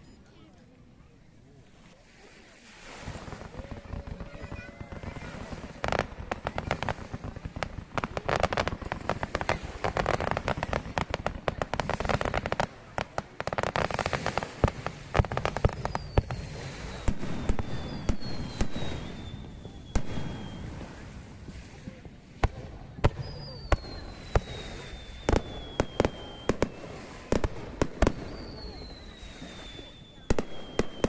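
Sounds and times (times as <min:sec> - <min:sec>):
fireworks crackling: 0:02.2 - 0:31.0
firework bangs: 0:03.0 - 0:31.0
falling firework whistles: 0:13.6 - 0:21.3, 0:22.4 - 0:31.0.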